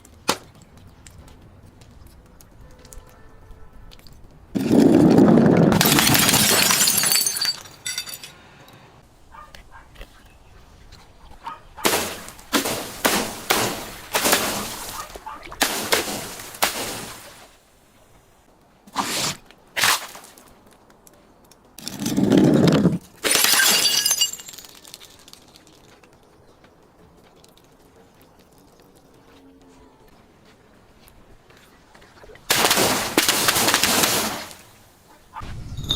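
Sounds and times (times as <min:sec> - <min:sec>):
glass bottles crushing and shattering: 0:04.6 - 0:08.4, 0:23.2 - 0:25.6.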